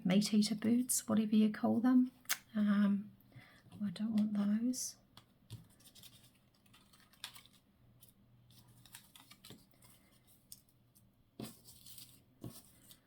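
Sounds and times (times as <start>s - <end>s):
faint paper rustles: 5.2s - 13.0s.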